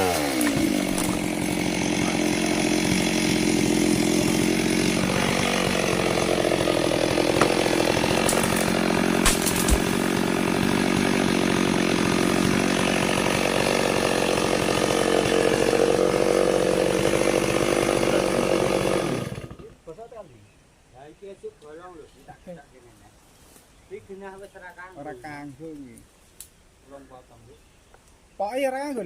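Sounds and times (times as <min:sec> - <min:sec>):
chainsaw cutting log: 0:00.0 - 0:19.7.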